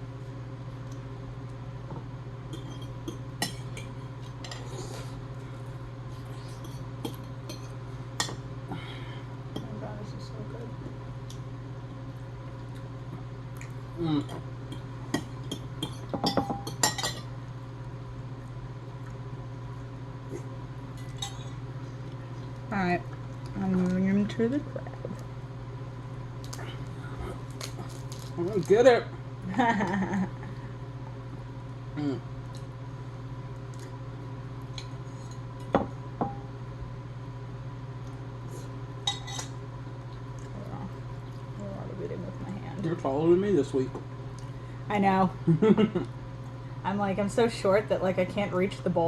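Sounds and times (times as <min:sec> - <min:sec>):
steady low hum: 0:00.0 - 0:49.0.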